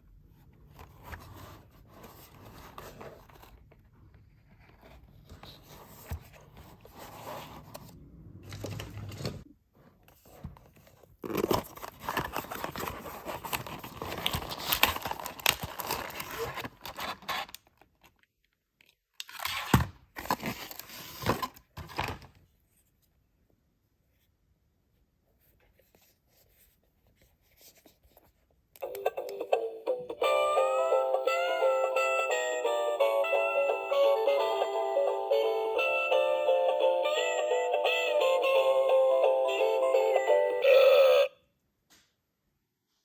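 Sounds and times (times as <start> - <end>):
packaging rustling: 10.2 - 18.2, 20.2 - 22.4
packaging tearing and crinkling: 11.2 - 18.2, 19.2 - 22.2.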